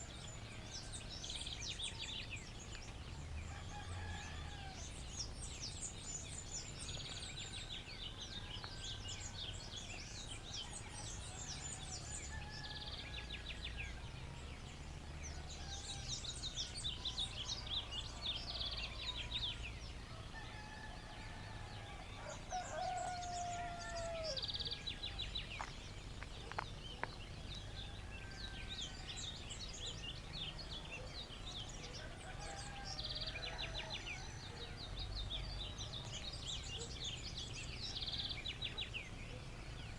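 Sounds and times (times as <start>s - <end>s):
birds chirping and trilling: 0.0s - 39.9s
rooster crowing: 20.3s - 24.6s, 32.0s - 34.8s.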